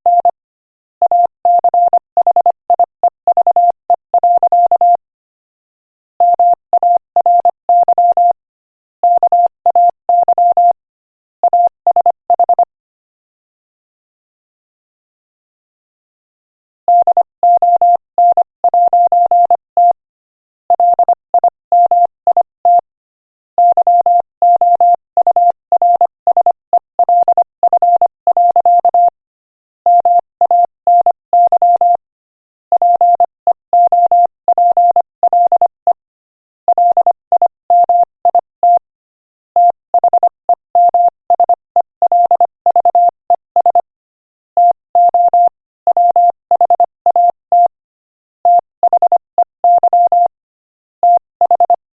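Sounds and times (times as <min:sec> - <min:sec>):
morse code beeps: 0:00.1 - 0:00.4, 0:01.1 - 0:05.0, 0:06.2 - 0:08.4, 0:09.0 - 0:10.8, 0:11.4 - 0:12.7, 0:16.9 - 0:20.0, 0:20.8 - 0:22.8, 0:23.6 - 0:29.2, 0:29.9 - 0:32.0, 0:32.7 - 0:36.0, 0:36.7 - 0:38.9, 0:39.6 - 0:43.9, 0:44.6 - 0:47.8, 0:48.4 - 0:50.4, 0:51.0 - 0:51.8.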